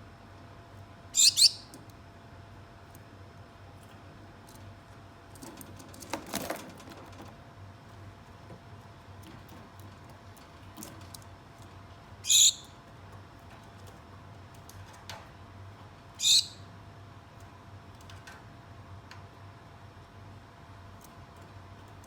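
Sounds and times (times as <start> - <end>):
finches calling: 1.2 - 1.7, 12.2 - 12.7, 16.2 - 16.6.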